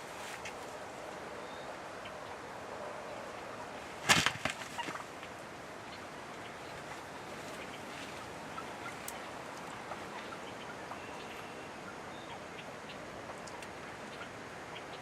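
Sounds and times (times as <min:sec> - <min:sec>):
wild turkey calls: 0:03.1 - 0:05.2
light ticks: 0:13.4 - 0:13.8.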